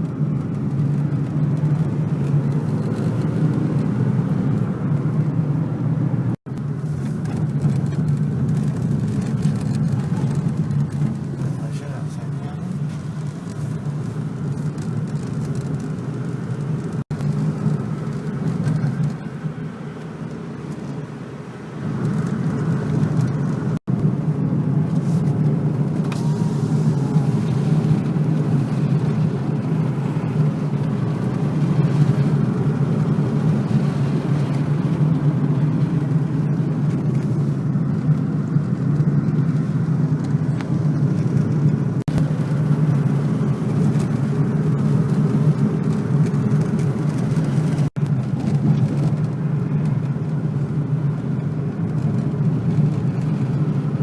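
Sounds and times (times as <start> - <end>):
car engine and road rumble: 0.0 - 54.0.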